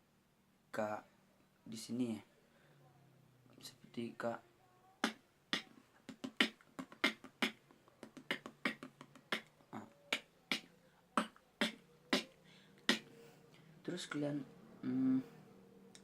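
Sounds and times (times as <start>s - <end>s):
beatbox snare clicks: 5.0s - 9.5s, 10.1s - 12.3s, 12.9s - 13.1s.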